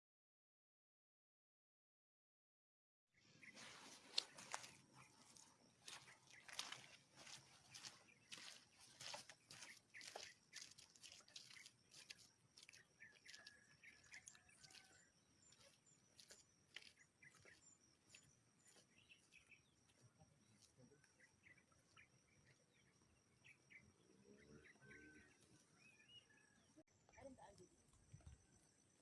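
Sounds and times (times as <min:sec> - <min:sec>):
quiet bird chirps: 0:03.2 - 0:29.0
high insect trill: 0:03.6 - 0:24.0.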